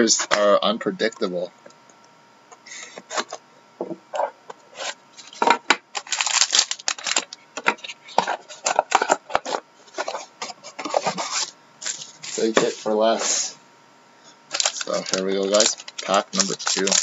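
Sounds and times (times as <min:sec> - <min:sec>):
packaging rubbing and rustling: 0:04.7 - 0:13.5, 0:14.5 - 0:17.0.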